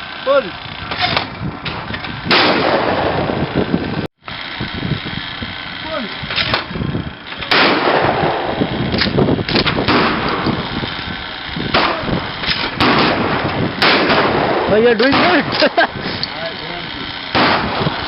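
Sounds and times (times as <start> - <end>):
shotgun shots echoing: 2.3 - 3.2, 7.4 - 10.4, 11.7 - 15.6, 17.3 - 17.8.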